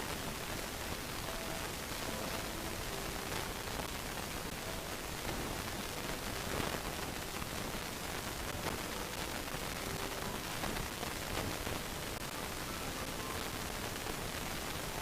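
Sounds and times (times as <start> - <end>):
steady static hiss: 0.0 - 15.0.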